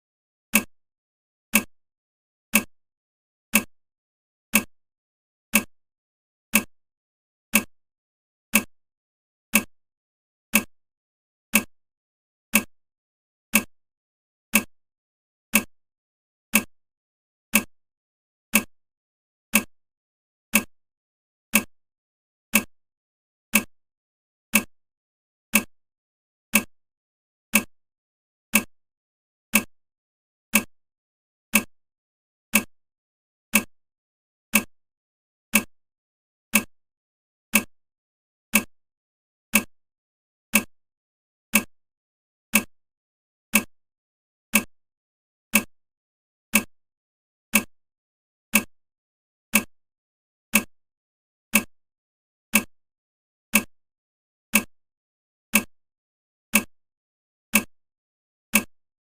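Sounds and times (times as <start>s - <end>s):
clock ticking: 0.5s - 0.7s, 1.5s - 1.7s, 2.5s - 2.7s, 3.5s - 3.7s, 4.5s - 4.7s, 5.5s - 5.7s, 6.5s - 6.7s, 7.5s - 7.7s, 8.5s - 8.7s, 9.5s - 9.7s, 10.5s - 10.7s, 11.5s - 11.7s, 12.5s - 12.7s, 13.5s - 13.7s, 14.5s - 14.7s, 15.5s - 15.7s, 16.5s - 16.7s, 17.5s - 17.7s, 18.5s - 18.7s, 19.5s - 19.7s, 20.5s - 20.7s, 21.5s - 21.7s, 22.5s - 22.7s, 23.5s - 23.7s, 24.5s - 24.7s, 25.5s - 25.7s, 26.5s - 26.7s, 27.5s - 27.7s, 28.5s - 28.7s, 29.5s - 29.7s, 30.5s - 30.7s, 31.5s - 31.7s, 32.5s - 32.7s, 33.5s - 33.7s, 34.5s - 34.7s, 35.5s - 35.7s, 36.5s - 36.7s, 37.5s - 37.7s, 38.5s - 38.7s, 39.5s - 39.7s, 40.5s - 40.7s, 41.5s - 41.7s, 42.5s - 42.7s, 43.5s - 43.7s, 45.5s - 45.7s, 46.5s - 46.7s, 47.5s - 47.7s, 48.5s - 48.7s, 49.5s - 49.7s, 50.5s - 50.7s, 52.5s - 52.7s, 53.5s - 53.7s, 54.5s - 54.7s, 55.5s - 55.7s, 58.5s - 58.7s.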